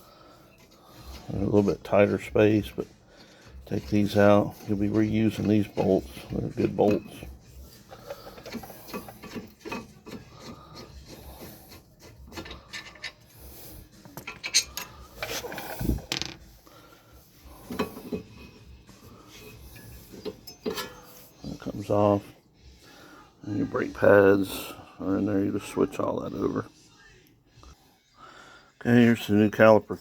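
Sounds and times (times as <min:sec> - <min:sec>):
metal scraping: 0:00.4 - 0:22.3.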